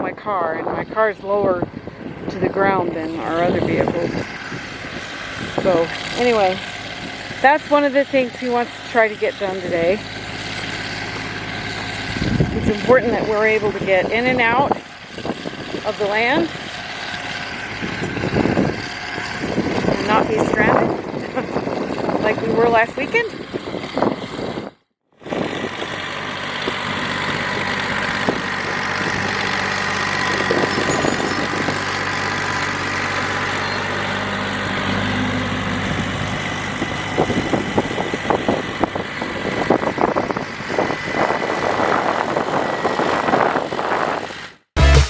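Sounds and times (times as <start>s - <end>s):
tractor engine running: 0.0s - 45.0s.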